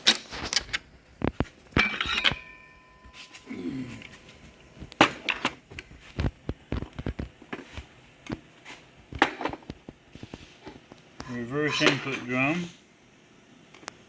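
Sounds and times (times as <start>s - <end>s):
metal parts clinking and knocking: 1.8s - 3.5s.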